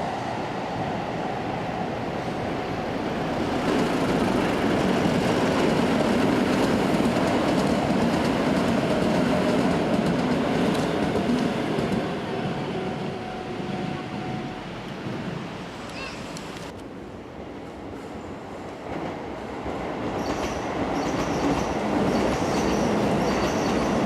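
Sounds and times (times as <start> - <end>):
train running past: 0.0 - 24.0.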